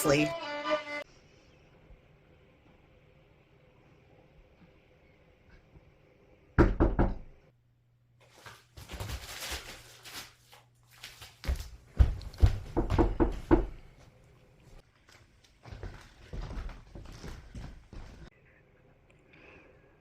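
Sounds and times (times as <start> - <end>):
knocking on a door: 6.6 - 7.4, 12.5 - 13.8.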